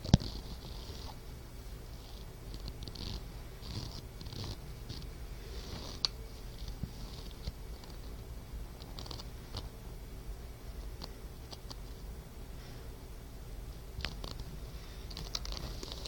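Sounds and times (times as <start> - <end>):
pet snoring softly: 0.0 - 1.2, 2.0 - 6.1, 6.9 - 8.0.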